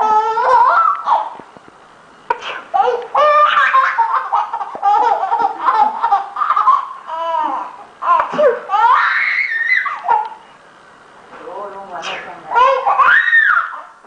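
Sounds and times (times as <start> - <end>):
child squealing: 0.0 - 1.3, 7.1 - 10.3, 12.5 - 14.0
small child laughing: 0.0 - 1.4, 2.8 - 10.4, 12.6 - 13.9.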